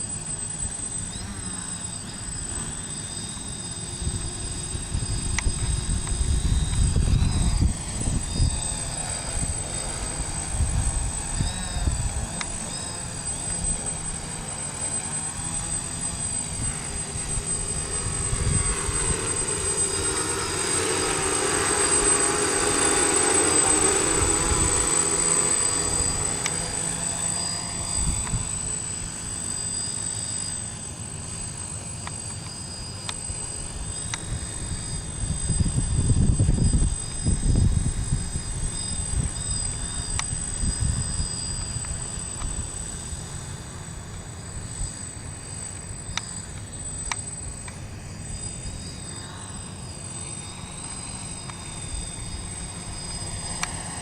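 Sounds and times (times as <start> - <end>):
drone propellers whirring: 0.0 - 54.0
wind buffeting microphone: 4.0 - 12.4, 16.6 - 20.6, 34.2 - 41.6.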